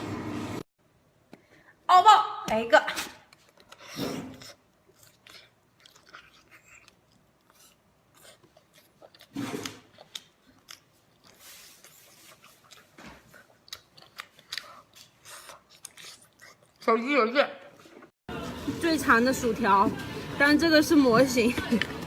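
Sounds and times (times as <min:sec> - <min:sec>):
person chewing food: 0:03.3 - 0:16.9.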